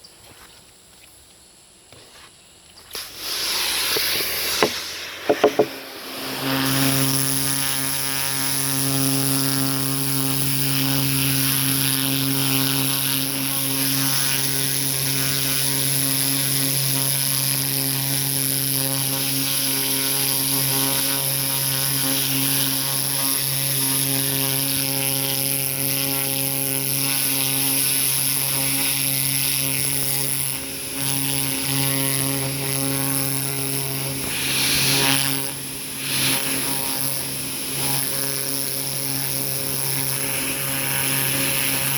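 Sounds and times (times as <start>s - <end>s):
water spray hissing: 2.9s - 8.7s, 33.8s - 37.7s
pressure washer motor humming: 2.9s - 10.6s.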